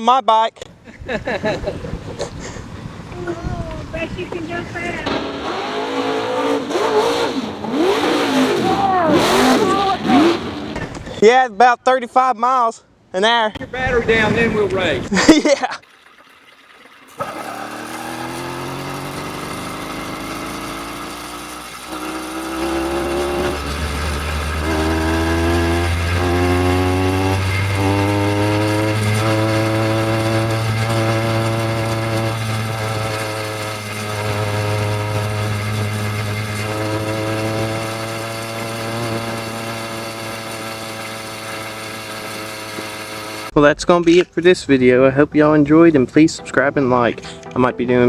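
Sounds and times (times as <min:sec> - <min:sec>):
deep bass: 0:13.6 - 0:15.2
rising synth build-up: 0:17.2 - 0:43.6
sustained synth chords: 0:18.0 - 0:39.5, 0:45.3 - 0:48.0.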